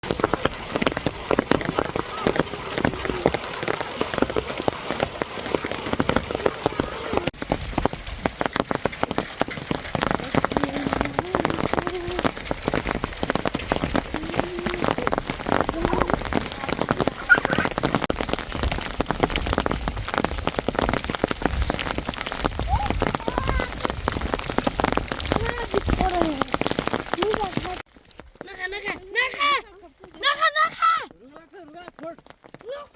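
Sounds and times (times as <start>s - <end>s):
rain and hail pattering: 0.0s - 32.9s.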